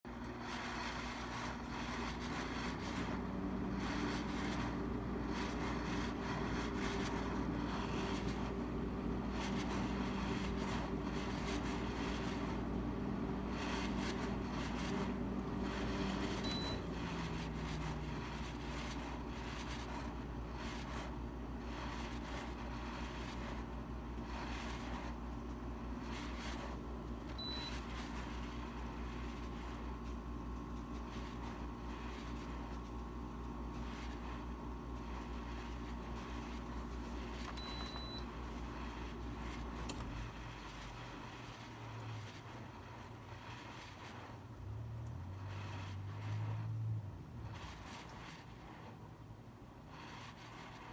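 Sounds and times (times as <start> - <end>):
air conditioner fan rushing: 0.1 - 50.9
pitched hum: 0.5 - 40.8.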